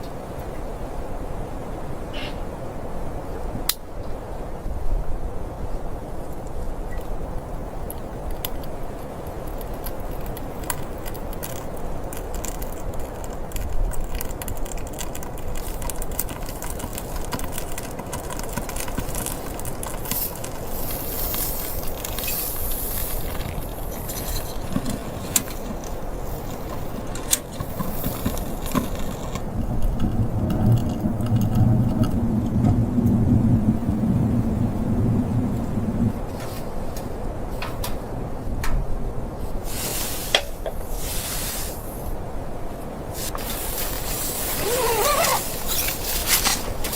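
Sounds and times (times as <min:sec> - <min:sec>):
campfire crackling: 0:00.0 - 0:46.9
fire popping: 0:06.2 - 0:38.0, 0:39.4 - 0:46.9.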